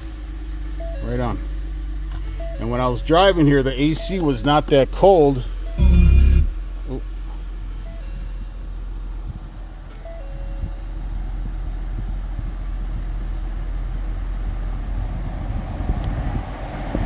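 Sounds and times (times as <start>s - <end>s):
car engine idling: 0.0s - 7.9s
two-note electronic beep: 5.8s - 6.6s.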